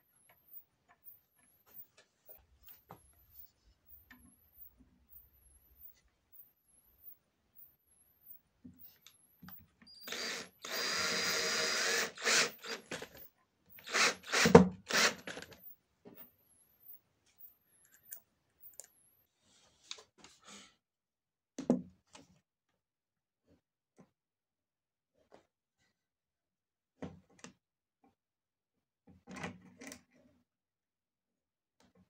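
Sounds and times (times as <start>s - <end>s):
power drill running: 9.9s - 15.7s.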